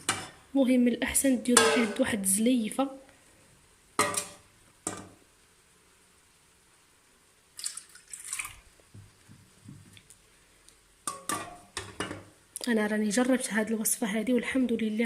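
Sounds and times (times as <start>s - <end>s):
milk pouring into a pot: 7.6s - 8.7s
milk splashing: 7.6s - 8.7s.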